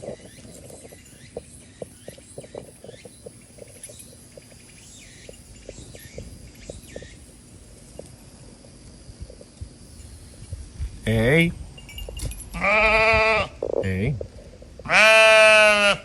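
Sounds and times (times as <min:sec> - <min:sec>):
faint high chirping: 0:00.0 - 0:12.6.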